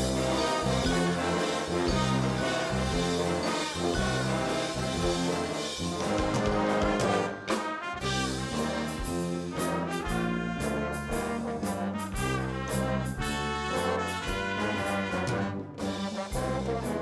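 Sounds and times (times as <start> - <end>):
brass chords: 0.0 - 17.0.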